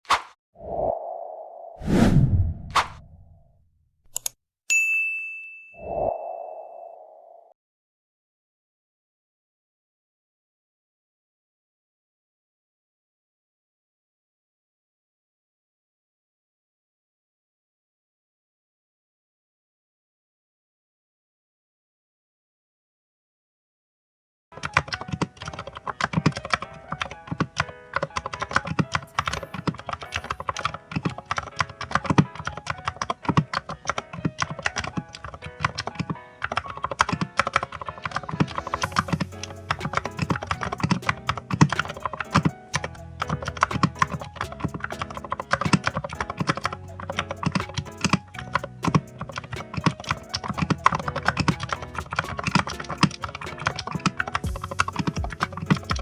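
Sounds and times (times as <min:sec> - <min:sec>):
background music: 0:24.6 - 0:56.0
fast typing on keyboard: 0:24.6 - 0:56.0.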